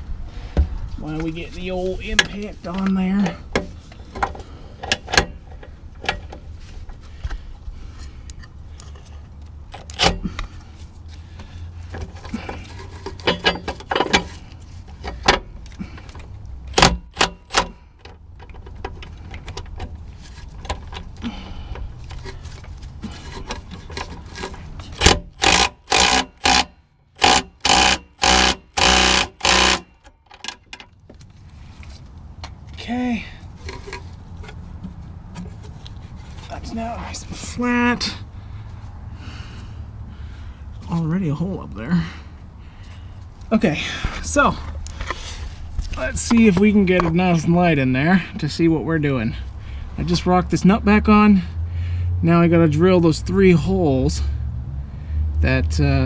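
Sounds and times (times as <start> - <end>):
tools and metal parts clanking: 1.1 - 7.0, 11.8 - 32.8, 33.6 - 37.5
impact wrench hammering: 25.0 - 29.9.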